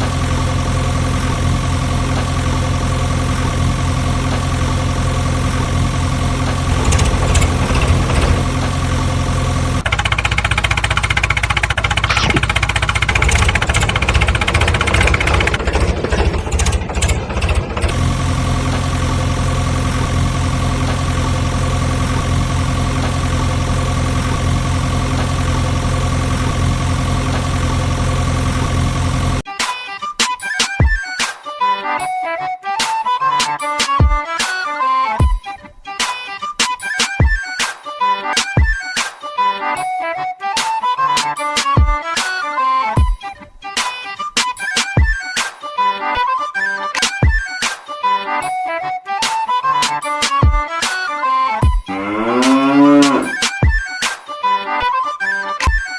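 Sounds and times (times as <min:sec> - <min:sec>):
engine idling: 0:00.0 - 0:29.4.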